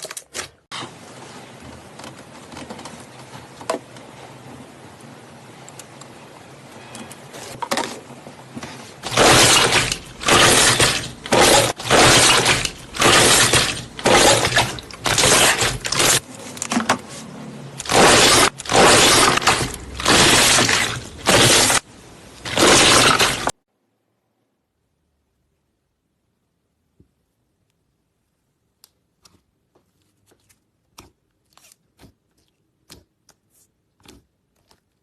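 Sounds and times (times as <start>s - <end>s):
slime squishing by hand: 28.9s - 35.0s.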